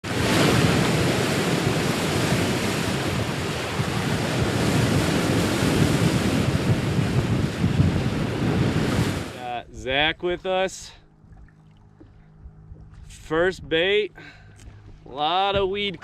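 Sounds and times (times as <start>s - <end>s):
wind on the microphone: 0.0s - 9.4s
ocean waves: 0.0s - 12.3s, 12.9s - 16.0s.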